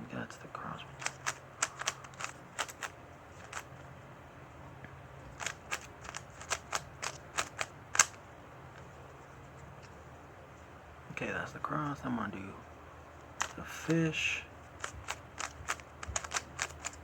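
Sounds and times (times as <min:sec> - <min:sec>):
puzzle cube clicking: 0:01.0 - 0:03.7, 0:05.3 - 0:08.2, 0:14.8 - 0:17.0.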